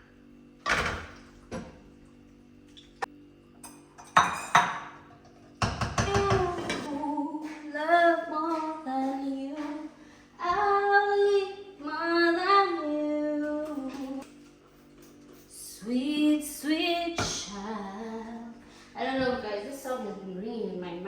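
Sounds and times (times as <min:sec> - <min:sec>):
woman singing unaccompanied: 0:06.0 - 0:14.2, 0:15.6 - 0:21.0.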